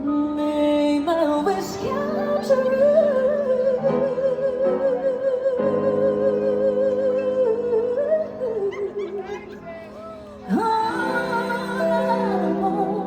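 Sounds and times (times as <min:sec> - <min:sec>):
woman singing long vibrato note: 0:10.4 - 0:13.0.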